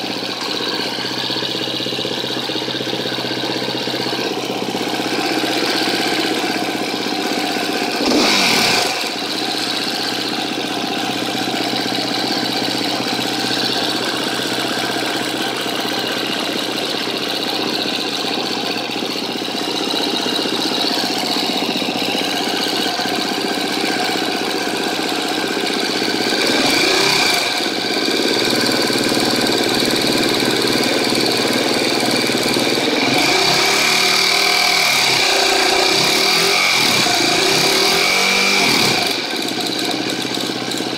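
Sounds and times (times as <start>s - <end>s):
engine revving: 0.0s - 40.9s
motorcycle engine idling with ticking: 0.0s - 40.9s.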